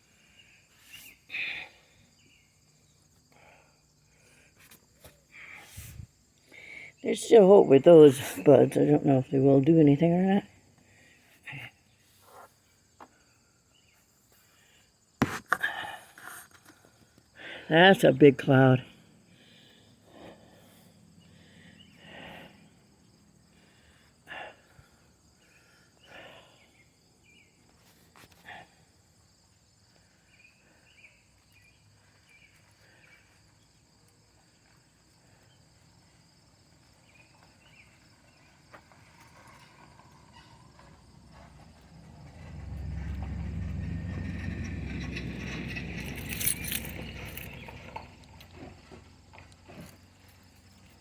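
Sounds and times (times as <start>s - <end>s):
loud low rumble: 41.9s - 46.0s.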